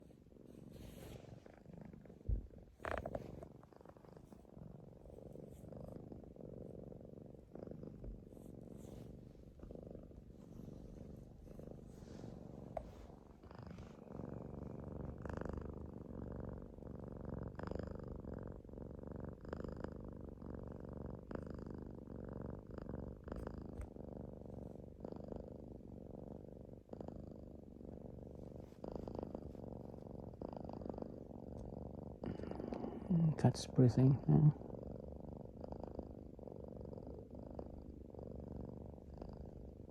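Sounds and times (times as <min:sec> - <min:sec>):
cat purring and breathing: 0:00.0 - 0:39.9.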